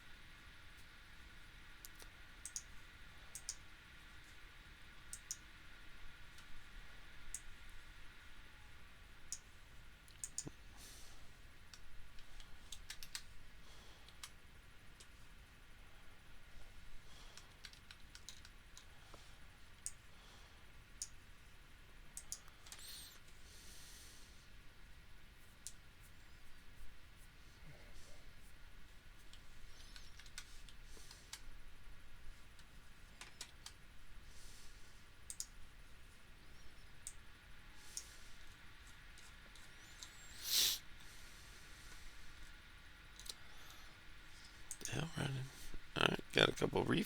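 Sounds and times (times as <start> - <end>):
computer mouse clicks: 1.8 - 4.4, 5.0 - 5.5, 6.2 - 6.6, 7.2 - 7.6, 9.3 - 10.6, 11.7 - 13.3, 14.0 - 15.2, 17.3 - 20.1, 20.9 - 21.2, 22.1 - 23.4, 25.4 - 26.1, 29.2 - 31.6, 32.4 - 33.9, 35.2 - 35.7, 36.4 - 40.3, 43.1 - 43.8, 44.4 - 44.9.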